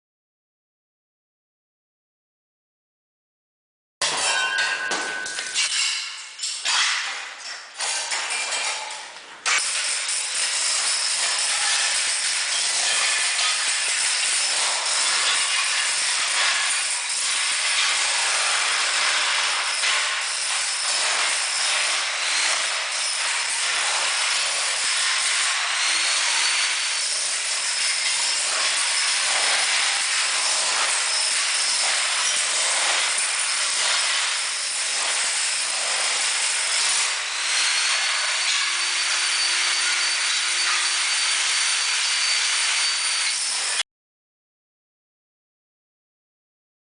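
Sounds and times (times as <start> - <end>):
tiles scraping and breaking: 4.0 - 43.8
jackhammer hammering: 9.5 - 43.8.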